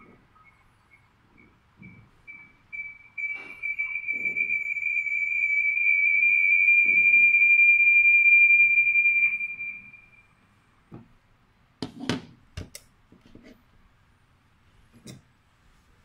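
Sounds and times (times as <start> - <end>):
high-pitched electronic tone: 2.7 - 10.3.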